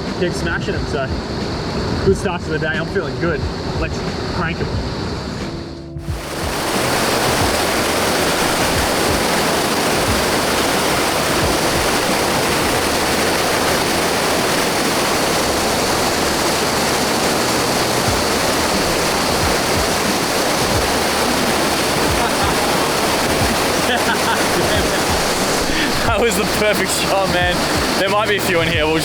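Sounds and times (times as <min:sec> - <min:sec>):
waterfall rushing: 0:06.0 - 0:29.0.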